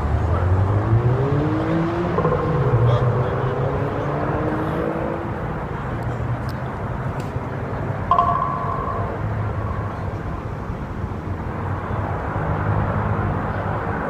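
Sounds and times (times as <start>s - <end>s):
low engine rumble: 2.1s - 7.2s.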